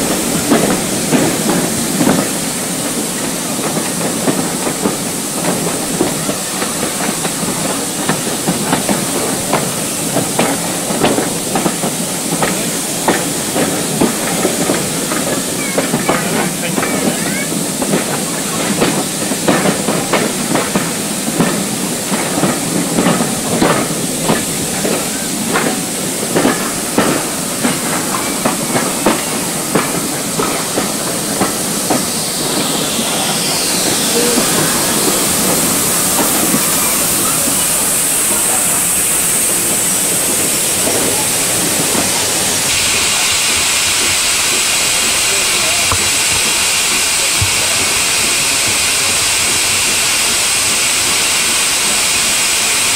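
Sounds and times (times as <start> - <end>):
steam hissing: 0.0 - 52.9
steam train clanks and knocks: 0.0 - 52.9.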